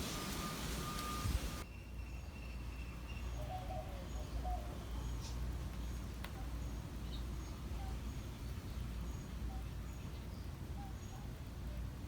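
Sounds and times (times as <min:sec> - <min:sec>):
reversing alarm beeping: 0:00.0 - 0:01.6
steady hiss: 0:00.0 - 0:01.6.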